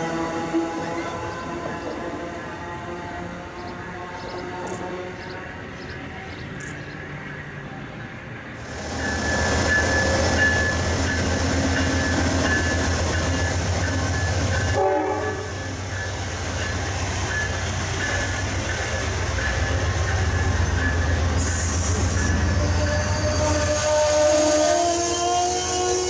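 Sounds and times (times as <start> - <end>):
diesel locomotive engine drone: 0.0 - 26.0
locomotive bell ringing: 8.7 - 26.0
train horn note: 14.7 - 15.8, 22.3 - 26.0.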